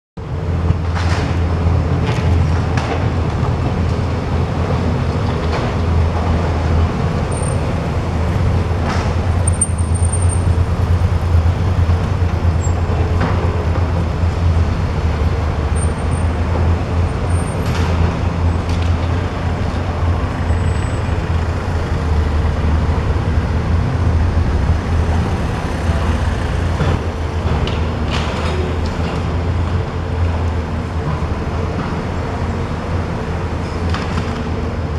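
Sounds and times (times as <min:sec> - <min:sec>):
diesel demolition machinery running: 0:01.0 - 0:34.7
high squeals: 0:06.9 - 0:16.4.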